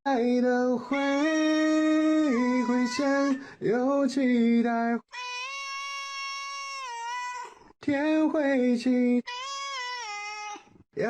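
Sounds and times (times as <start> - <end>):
voice holding sung notes: 0.1 - 5.0.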